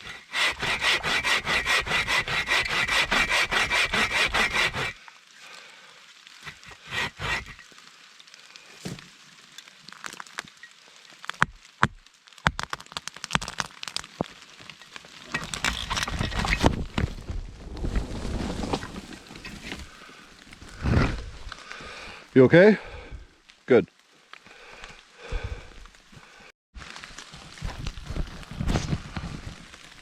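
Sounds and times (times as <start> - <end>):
wood and brush cracking: 6.2 - 22.0, 26.8 - 30.0
brush rustling: 15.0 - 21.7.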